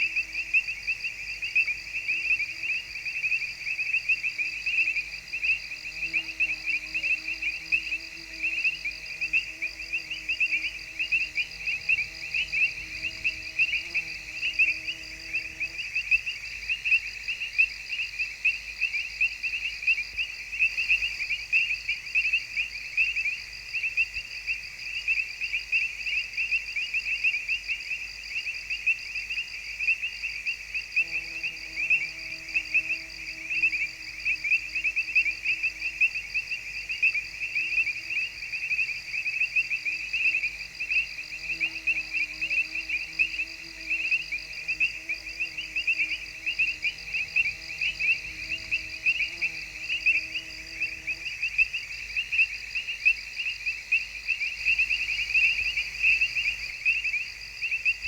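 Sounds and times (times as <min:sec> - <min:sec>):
insects trilling: 0:00.0 - 0:58.0.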